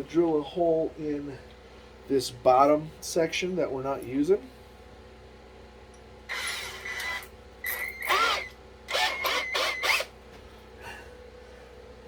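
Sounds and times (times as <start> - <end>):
electric drill boring into wood: 6.3 - 10.1.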